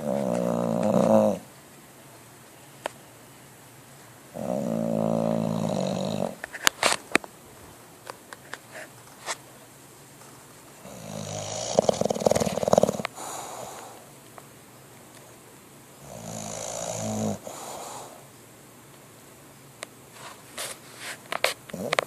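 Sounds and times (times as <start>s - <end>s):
dog snoring: 0.0s - 1.5s, 4.3s - 6.4s, 10.8s - 14.1s, 16.0s - 18.2s, 21.7s - 22.0s.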